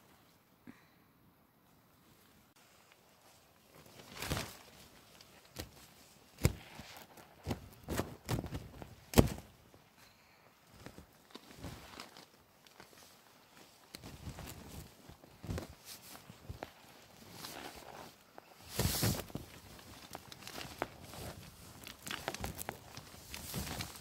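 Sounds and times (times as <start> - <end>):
crunching rustles: 10.7 - 24.0.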